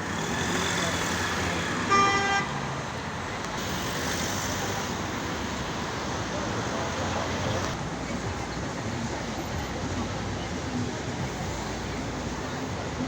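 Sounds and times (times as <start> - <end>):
cars rushing past: 0.0 - 7.8.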